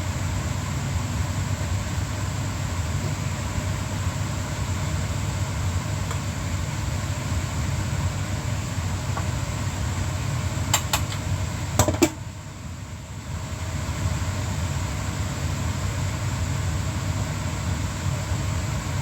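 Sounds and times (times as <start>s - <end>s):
low motor rumble with hiss: 0.0s - 19.0s
sharp clicks and knocks: 10.7s - 11.2s.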